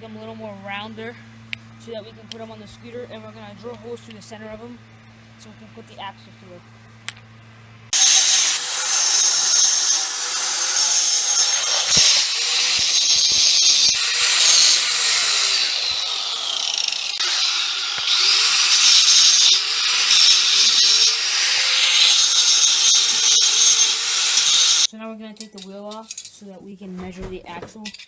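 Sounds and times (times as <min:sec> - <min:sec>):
power grinder grinding metal: 0:07.9 - 0:24.9.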